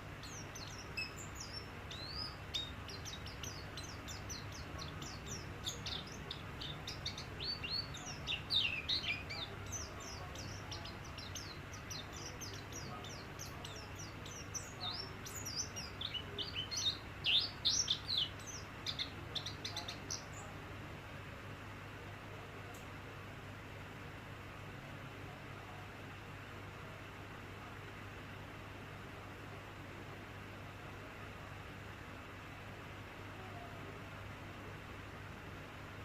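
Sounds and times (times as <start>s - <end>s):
bird twittering song: 0.0s - 20.5s
faint low hum: 0.0s - 36.0s.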